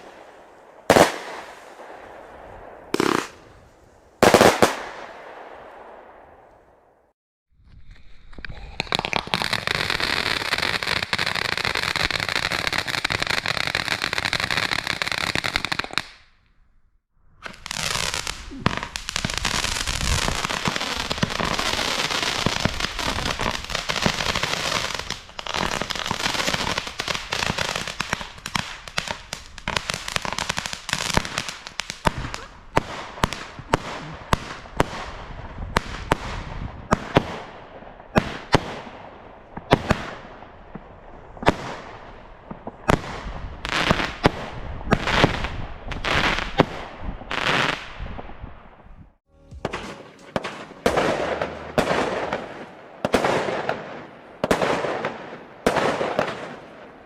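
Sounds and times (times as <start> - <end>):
sharp firework cracks: 0.0 - 3.5, 4.2 - 6.2, 49.5 - 56.9
fireworks crackling: 0.0 - 5.2, 8.6 - 16.2, 17.4 - 35.2, 49.4 - 57.0.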